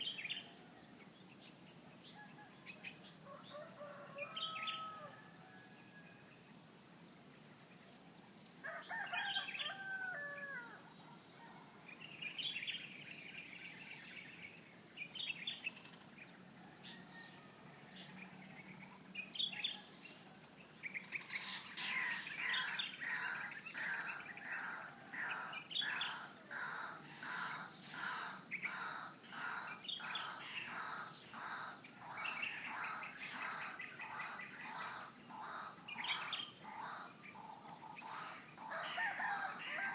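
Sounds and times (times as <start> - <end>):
rooster crowing: 3.2 - 6.1, 8.6 - 10.8, 16.7 - 17.9, 38.6 - 39.9.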